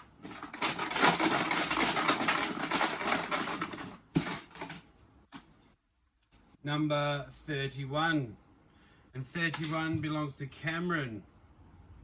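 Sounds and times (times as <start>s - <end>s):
papers rattling in container: 0.0s - 4.9s.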